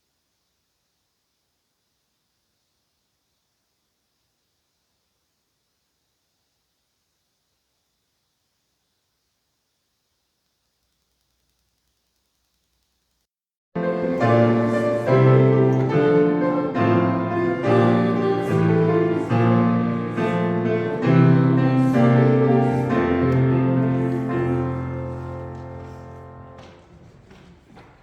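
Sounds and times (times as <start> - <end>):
instrumental keyboard music: 13.8 - 26.6.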